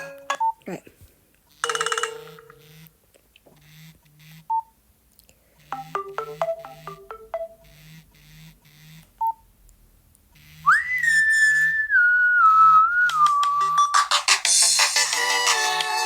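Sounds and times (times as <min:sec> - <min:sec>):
whistle-like synth tone: 0:10.7 - 0:13.9.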